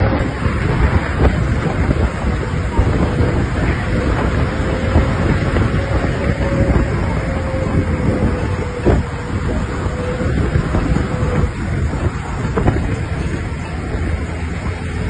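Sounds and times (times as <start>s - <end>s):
faint whine: 0.0s - 15.0s
vehicle rumbling over rough ground: 0.0s - 15.0s
wind on microphone: 0.0s - 15.0s.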